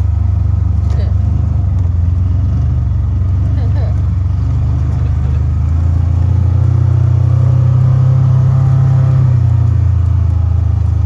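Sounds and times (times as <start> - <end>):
vehicle engine driving through snow: 0.0 - 11.0.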